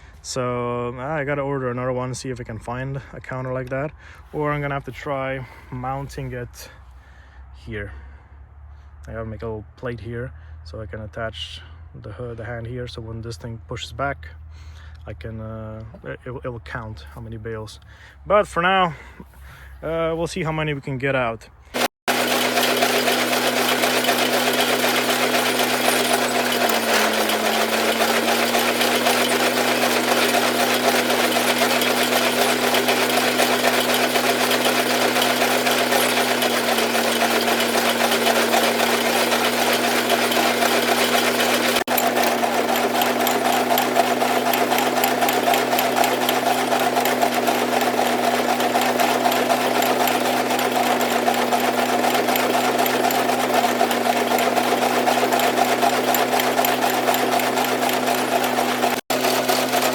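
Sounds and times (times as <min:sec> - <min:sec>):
tractor engine hum: 0:13.7 - 0:59.9
baler mechanical clatter: 0:21.7 - 0:59.9.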